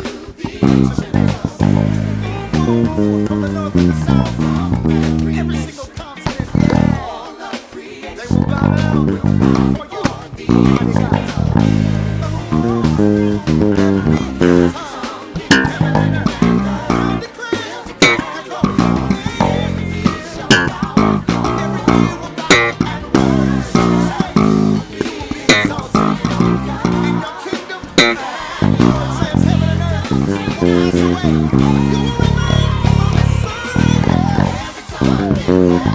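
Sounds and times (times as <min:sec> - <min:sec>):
electric bass guitar playing: 0:00.0 - 0:07.2, 0:08.2 - 0:35.9
recorded band track: 0:00.0 - 0:35.9.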